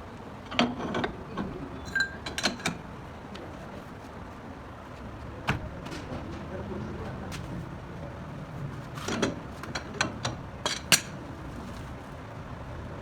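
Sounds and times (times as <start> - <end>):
metal tools clinking: 1.8 - 2.8.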